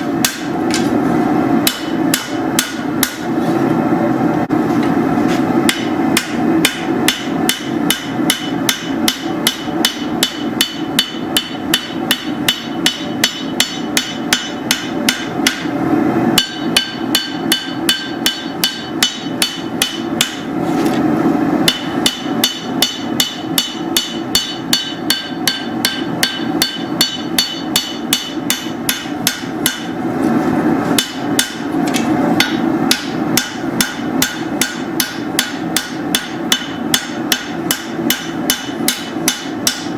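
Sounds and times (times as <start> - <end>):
hammer striking steel on anvil: 0.0 - 1.0, 1.6 - 3.4, 5.5 - 20.6, 21.6 - 30.0, 30.9 - 39.9
anvil ringing: 5.7 - 15.7, 16.4 - 20.5, 21.6 - 30.0, 32.4 - 39.9.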